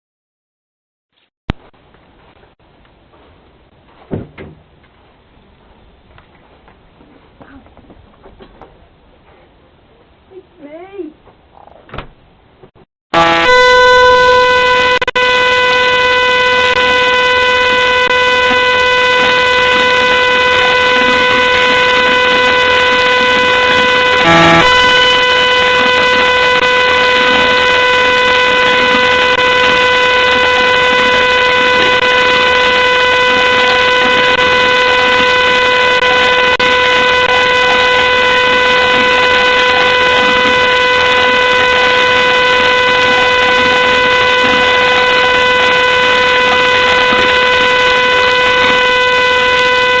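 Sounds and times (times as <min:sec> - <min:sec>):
steady buzzy electronic tone: 0:13.1 - 0:50.0.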